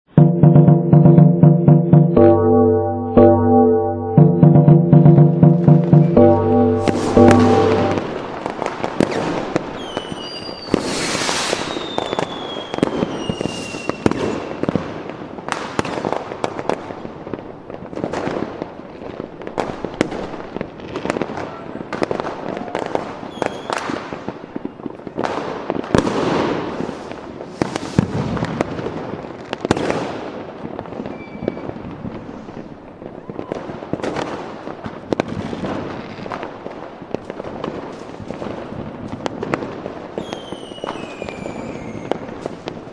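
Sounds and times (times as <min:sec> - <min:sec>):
fireworks bangs and crackling: 0:06.8 - 0:42.9
whistling rockets: 0:08.4 - 0:14.8, 0:22.6 - 0:24.0, 0:27.5 - 0:28.3, 0:31.0 - 0:31.9, 0:40.2 - 0:42.6.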